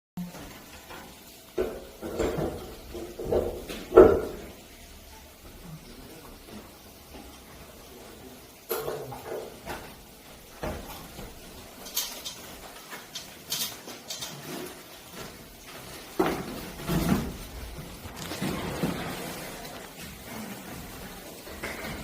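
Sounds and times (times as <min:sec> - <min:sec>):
hard objects knocking and clattering: 0:00.4 - 0:04.6, 0:08.7 - 0:22.0.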